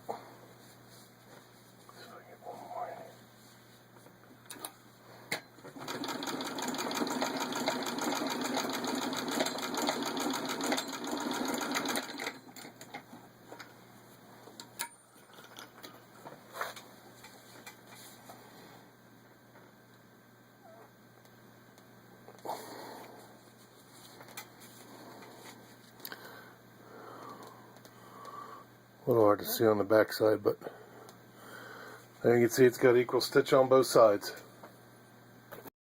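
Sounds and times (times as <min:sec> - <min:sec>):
sewing machine clatter: 0:05.7 - 0:13.0.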